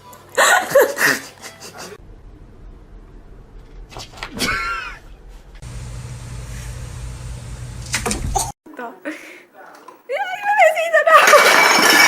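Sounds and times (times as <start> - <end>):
steady low hum: 2.0 - 8.5.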